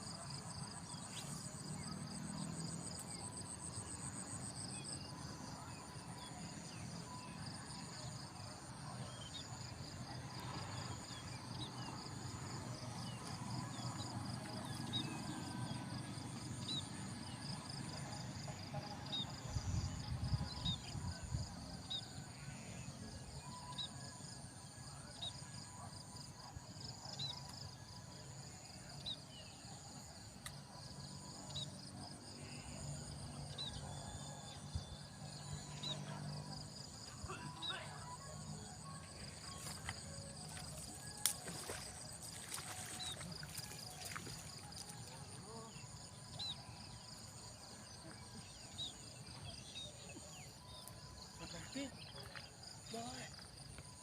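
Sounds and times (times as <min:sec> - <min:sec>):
insects chirping: 0:34.5 - 0:54.0.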